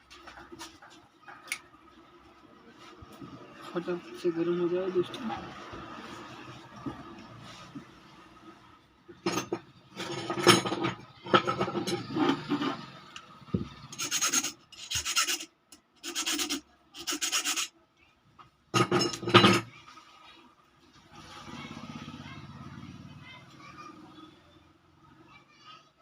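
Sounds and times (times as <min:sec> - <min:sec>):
hand scraping strokes: 0:13.9 - 0:17.7.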